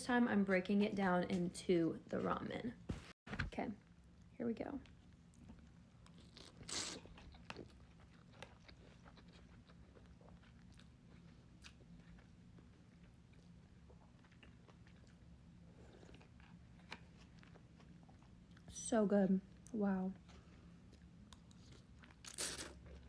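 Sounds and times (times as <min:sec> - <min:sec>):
quiet chewing: 0:04.8 - 0:18.7, 0:19.5 - 0:23.0.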